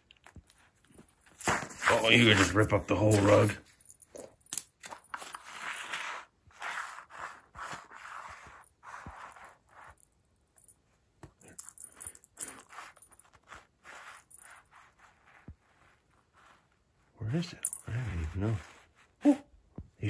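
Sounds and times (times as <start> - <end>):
cat scratching a rug: 5.0 - 10.2, 11.9 - 17.1, 17.8 - 19.6.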